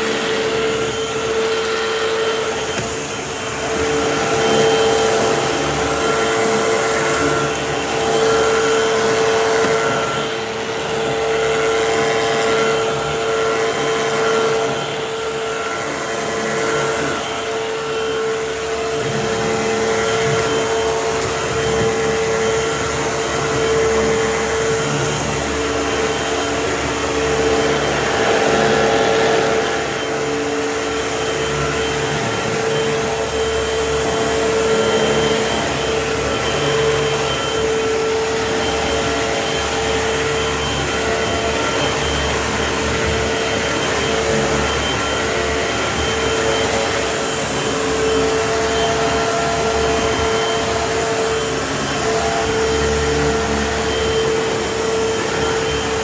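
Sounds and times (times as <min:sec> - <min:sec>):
vacuum cleaner running: 0:00.0 - 0:56.0.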